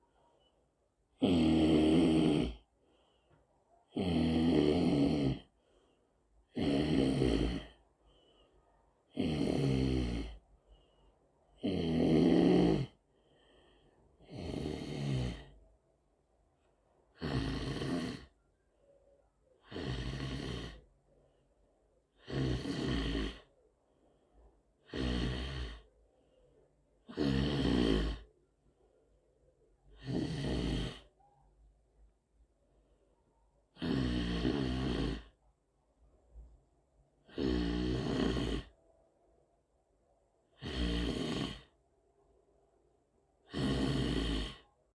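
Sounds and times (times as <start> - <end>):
person snoring: 1.1 - 2.7, 3.9 - 7.9, 9.1 - 10.4, 11.6 - 15.6, 17.1 - 18.4, 19.6 - 20.9, 22.1 - 23.6, 24.8 - 25.9, 27.0 - 28.3, 29.9 - 31.2, 33.7 - 35.4, 37.2 - 38.8, 40.5 - 41.8, 43.4 - 44.8.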